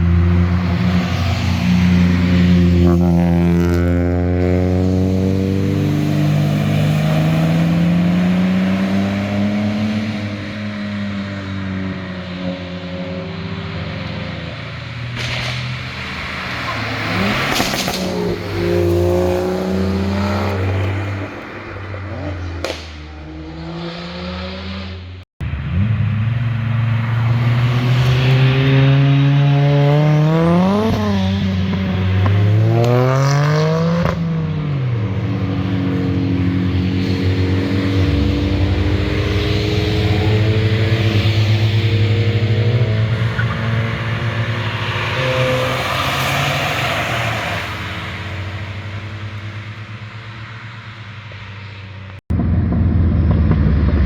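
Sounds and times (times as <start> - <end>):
sports cars passing at speed: 0.0 - 54.0.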